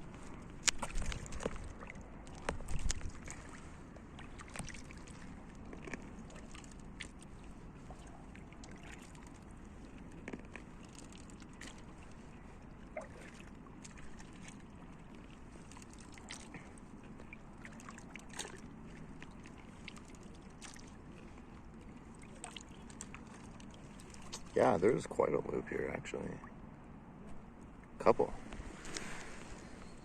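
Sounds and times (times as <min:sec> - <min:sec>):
paddle splashing water: 0:00.0 - 0:24.9, 0:28.3 - 0:30.0
water drips: 0:00.6 - 0:24.6.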